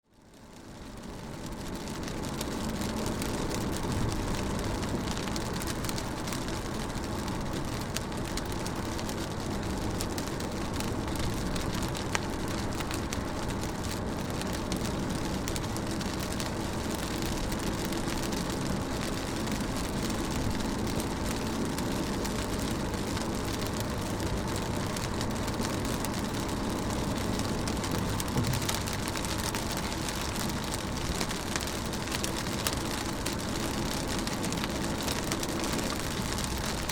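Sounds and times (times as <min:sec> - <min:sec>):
rain on car window: 0:00.0 - 0:36.9
low rumble: 0:26.6 - 0:30.5.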